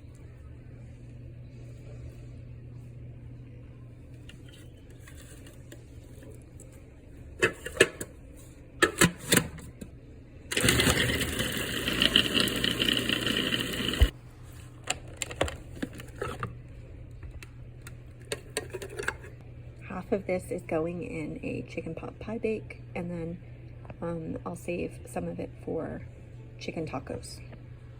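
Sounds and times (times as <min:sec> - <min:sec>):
kitchen appliance motor running: 0:10.5 - 0:14.1.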